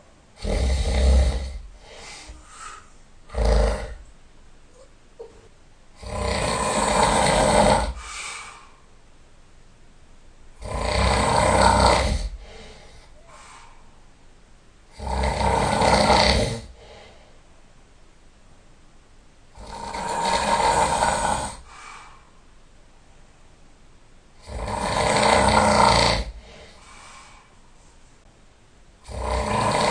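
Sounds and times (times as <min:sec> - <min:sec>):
person snoring loudly: 0:00.4 - 0:02.4, 0:03.3 - 0:04.0, 0:06.0 - 0:08.1, 0:10.6 - 0:12.9, 0:14.9 - 0:16.9, 0:19.6 - 0:21.7, 0:24.4 - 0:26.8, 0:29.0 - 0:29.9.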